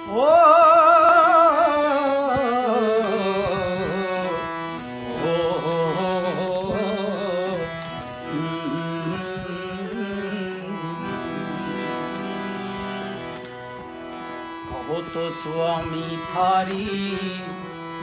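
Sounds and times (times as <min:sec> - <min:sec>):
person singing with vibrato: 0:00.0 - 0:13.0
steady instrumental drone: 0:00.0 - 0:18.0.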